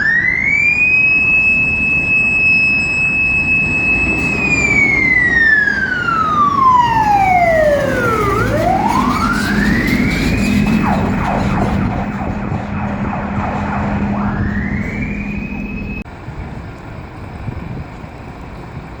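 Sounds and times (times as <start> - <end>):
fire engine siren wailing: 0.0 - 16.1.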